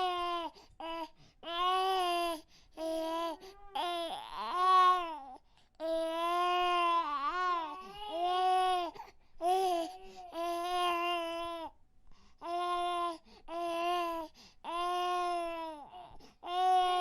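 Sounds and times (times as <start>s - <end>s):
baby crying: 0.0s - 11.7s, 12.4s - 17.0s.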